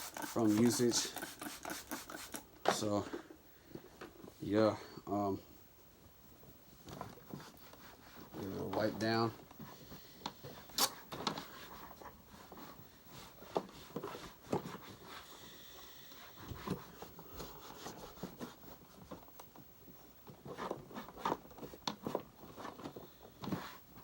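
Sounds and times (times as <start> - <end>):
cloth rubbing on plastic: 0.0 - 2.5, 7.0 - 9.8, 16.2 - 19.2.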